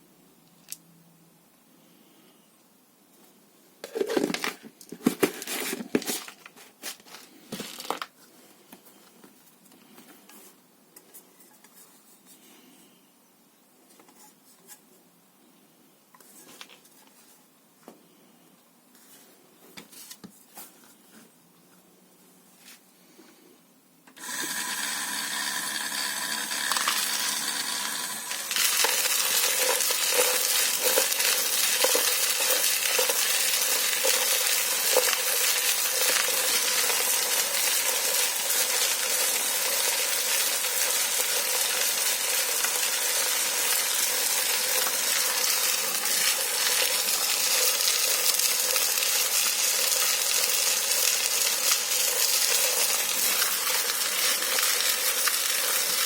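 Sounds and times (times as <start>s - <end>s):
metal parts rattling and clinking: 28.5s - 38.4s.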